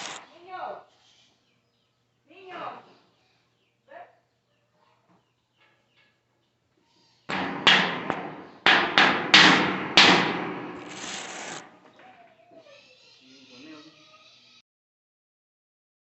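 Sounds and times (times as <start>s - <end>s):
steady hiss: 0.0s - 0.2s, 10.5s - 11.7s
sharp knocks: 7.3s - 11.7s.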